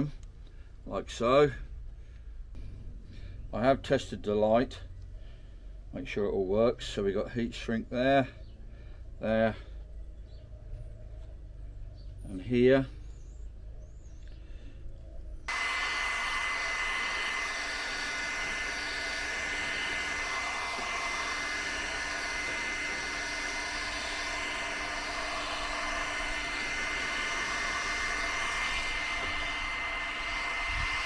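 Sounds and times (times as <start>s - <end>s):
heat gun blowing with whistle: 15.5s - 31.0s.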